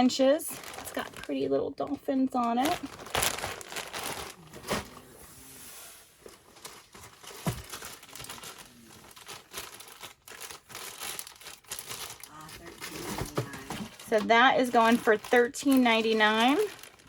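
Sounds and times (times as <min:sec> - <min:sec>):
packaging crinkling and rustling: 0:00.5 - 0:01.4, 0:02.4 - 0:17.0.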